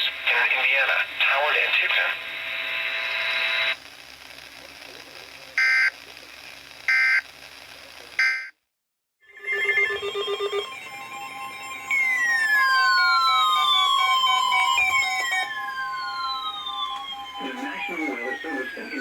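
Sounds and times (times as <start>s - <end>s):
falling whistle-like tone: 12.0s - 17.5s.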